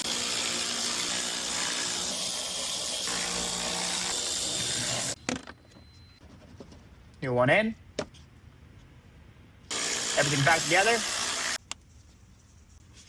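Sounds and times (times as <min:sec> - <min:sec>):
electric power tool motor running: 0:00.0 - 0:05.2, 0:09.7 - 0:11.6.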